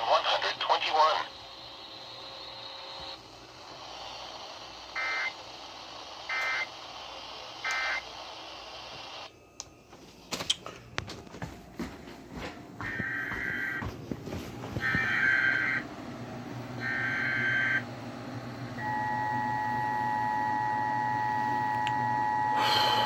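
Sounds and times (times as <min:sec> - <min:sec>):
digital data tone bursts: 0:04.9 - 0:05.4, 0:06.2 - 0:06.8, 0:07.4 - 0:09.2, 0:14.8 - 0:15.8, 0:16.8 - 0:17.8.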